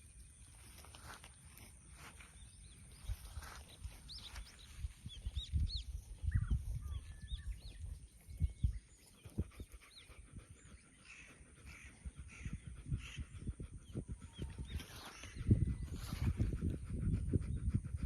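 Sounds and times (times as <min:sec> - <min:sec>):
small birds chirping: 0:00.0 - 0:18.0
dog heavy breathing: 0:16.3 - 0:18.0.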